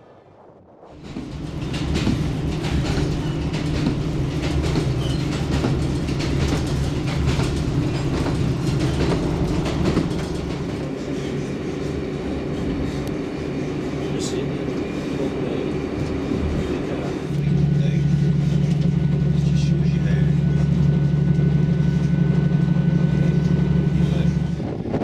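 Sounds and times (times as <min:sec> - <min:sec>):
diesel train engine drone: 0:00.0 - 0:25.0
train wheels clicking and rattling: 0:01.0 - 0:24.8.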